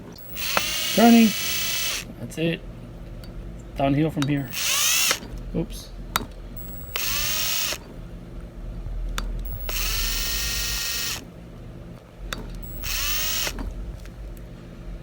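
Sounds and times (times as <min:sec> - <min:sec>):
electric drill whining: 0:00.0 - 0:02.1, 0:04.4 - 0:05.4, 0:06.6 - 0:07.9, 0:09.4 - 0:11.3, 0:12.6 - 0:14.4.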